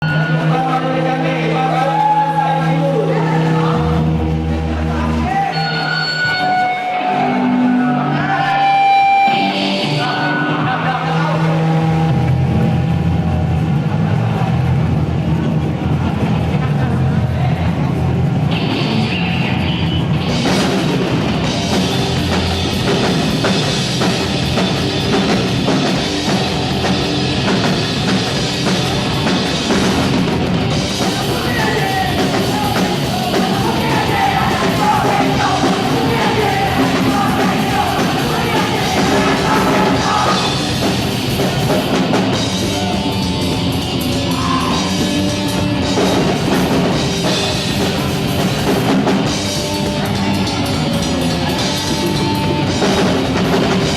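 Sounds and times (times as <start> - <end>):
punk rock band playing: 0.0 - 53.9
drum kit: 8.4 - 53.9
person singing: 31.0 - 40.8.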